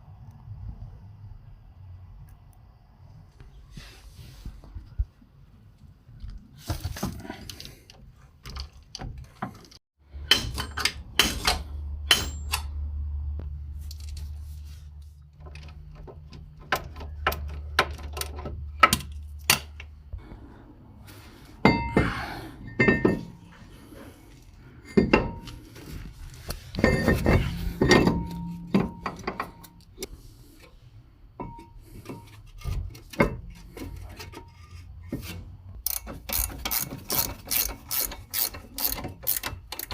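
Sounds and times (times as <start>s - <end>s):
metal tools clinking and knocking: 8.4s - 12.7s, 21.6s - 23.7s, 24.8s - 25.7s, 26.7s - 30.1s
steady low hum: 18.6s - 32.4s.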